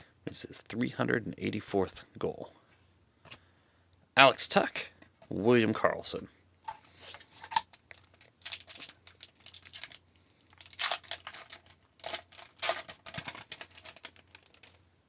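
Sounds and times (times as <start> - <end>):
cards shuffling: 6.7 - 14.8
wrapper tearing and crinkling: 7.4 - 14.8.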